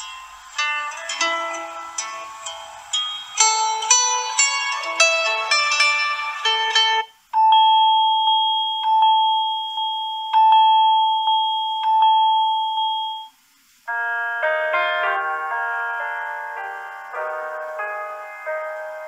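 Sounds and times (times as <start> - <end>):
bright multi-note chime: 0.0 - 13.3
bell-like ringtone: 0.0 - 17.7.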